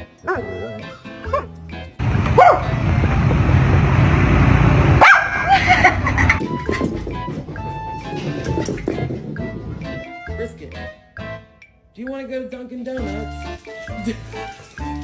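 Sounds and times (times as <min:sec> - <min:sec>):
background music: 0:00.0 - 0:03.0, 0:05.6 - 0:15.0
dog barking and yipping: 0:00.2 - 0:00.7, 0:01.3 - 0:01.6, 0:02.3 - 0:02.8, 0:05.0 - 0:07.0
loud steady rushing noise: 0:02.0 - 0:06.8.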